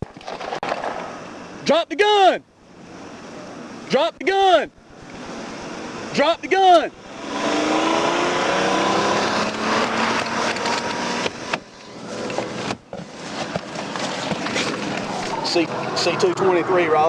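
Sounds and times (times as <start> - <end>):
car engine revving: 4.7 - 17.0
loud rushing noise: 4.8 - 17.0.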